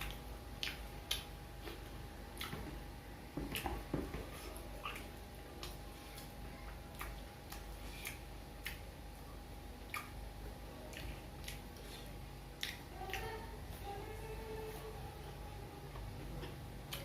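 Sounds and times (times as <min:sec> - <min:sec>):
chewing with wet clicks: 0:00.0 - 0:02.8, 0:04.8 - 0:09.0, 0:09.8 - 0:13.4, 0:15.9 - 0:17.0.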